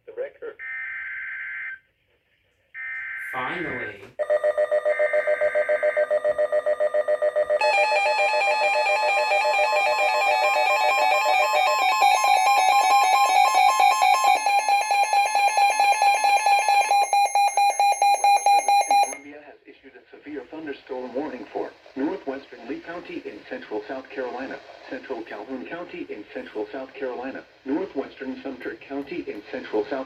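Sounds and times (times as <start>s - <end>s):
rapid electronic alarm beeping: 4.2s - 19.2s.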